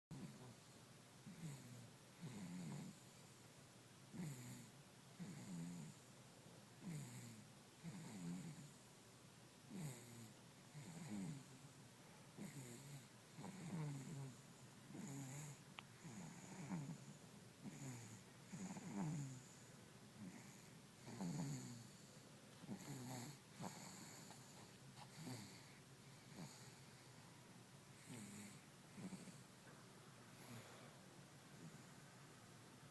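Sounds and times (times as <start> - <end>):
baby snoring: 1.2 - 3.2, 4.1 - 6.0, 6.8 - 8.8, 9.7 - 11.6, 12.4 - 26.9, 28.0 - 29.5.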